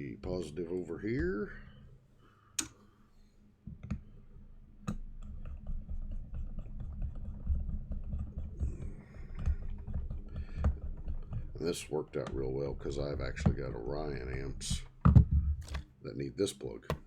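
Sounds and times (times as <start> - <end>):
rattling handling noise: 14.3 - 15.9.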